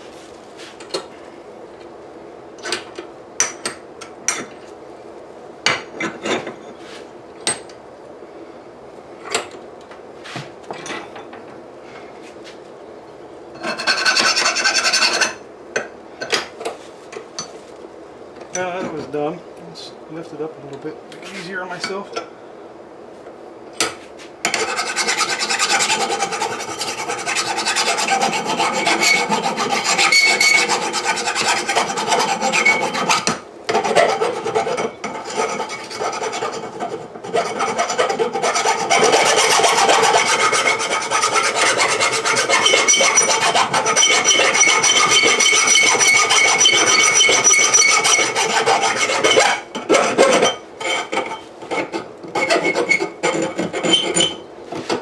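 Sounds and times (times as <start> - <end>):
grinder grinding steel: 24.6 - 55.0.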